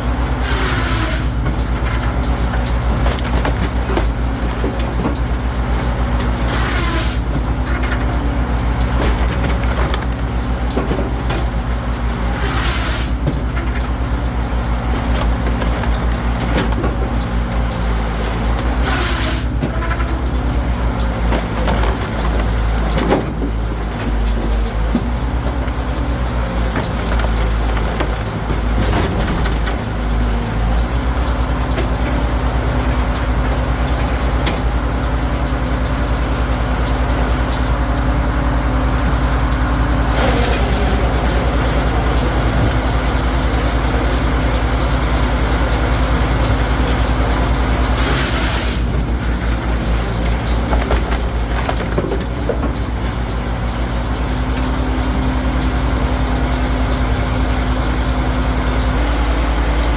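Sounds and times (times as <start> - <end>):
logs being cut and split: 0.0 - 11.6, 12.2 - 32.2, 46.1 - 53.0
firewood processor engine drone: 0.0 - 59.9.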